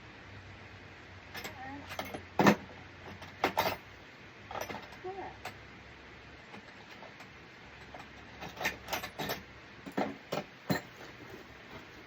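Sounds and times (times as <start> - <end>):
tools and metal parts clicking: 1.3 - 3.9, 4.5 - 5.6, 6.5 - 11.1.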